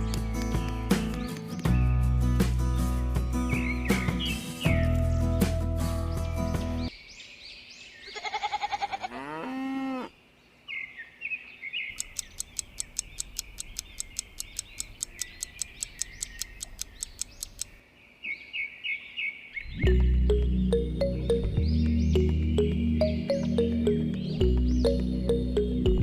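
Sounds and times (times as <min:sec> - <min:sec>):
small birds chirping: 0:00.0 - 0:08.8, 0:10.0 - 0:26.0
sharp even clicks: 0:11.9 - 0:17.8.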